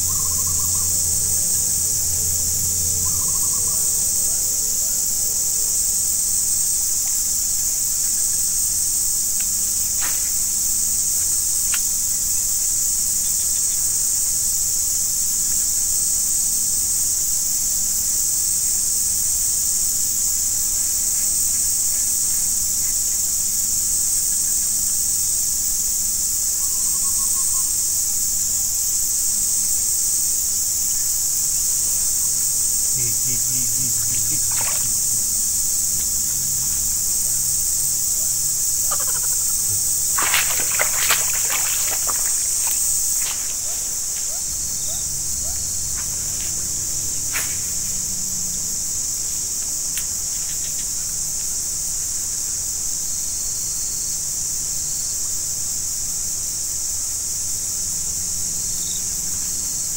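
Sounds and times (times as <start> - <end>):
insects droning: 0.0 - 59.9.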